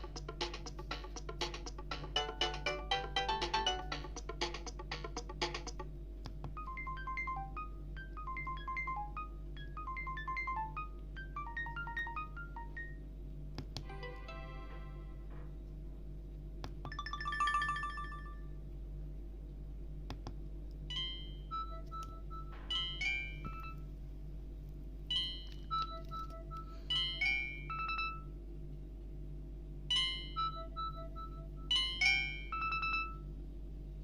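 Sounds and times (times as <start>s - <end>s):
steady low hum: 0.0s - 34.0s
beeping synthesized ringtone melody: 2.1s - 4.4s, 6.6s - 13.0s, 30.4s - 33.2s.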